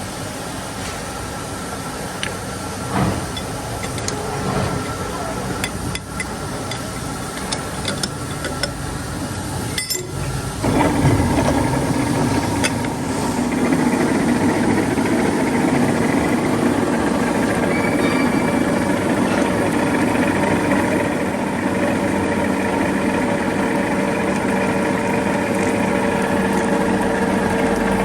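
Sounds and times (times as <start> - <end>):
steady mechanical hum: 0.0 - 28.0
loud machine running: 2.8 - 28.0.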